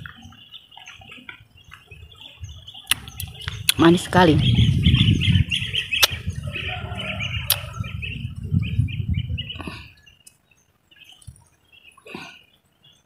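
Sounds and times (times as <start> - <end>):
small birds chirping: 0.0 - 13.0
low rumble: 3.2 - 10.1.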